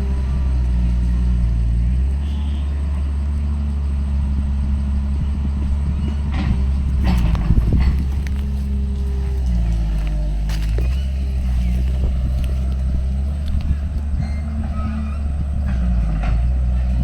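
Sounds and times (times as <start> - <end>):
heavy machinery diesel engine: 0.0 - 17.0.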